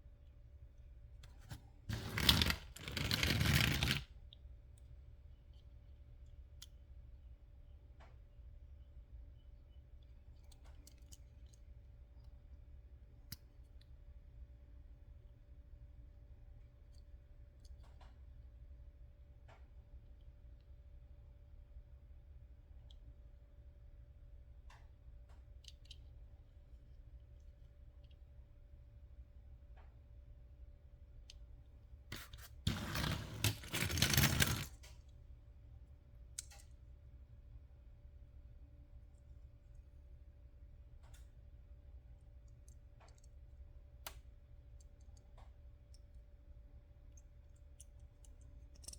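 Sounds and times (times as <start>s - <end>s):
scraping rustling handling noise: 1.4s - 4.0s, 32.1s - 34.8s
toy cars clicking and tapping: 1.9s - 4.0s, 32.2s - 34.8s.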